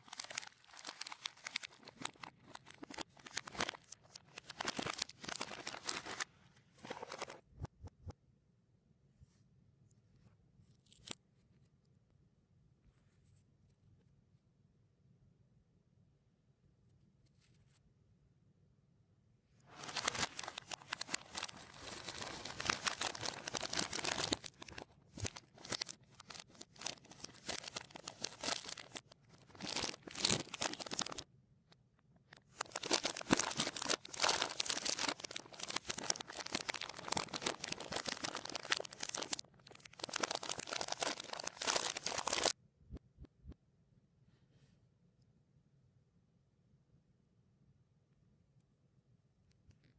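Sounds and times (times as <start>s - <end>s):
reversed wrappers crinkling: 0.0s - 7.4s, 19.7s - 31.2s, 32.3s - 42.6s.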